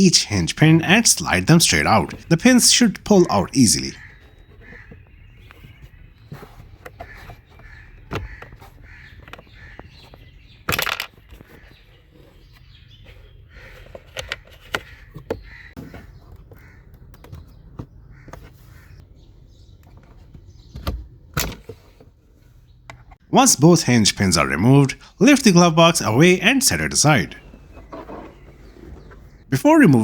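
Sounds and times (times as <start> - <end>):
plastic parts clicking and knocking: 4.1 - 11.7, 13.1 - 18.6.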